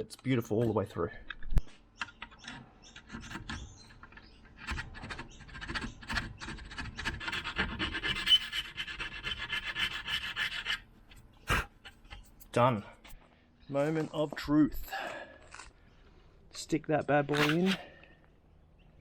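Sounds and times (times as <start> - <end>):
hand tool scraping metal: 2.4 - 13.2, 17.3 - 18.0.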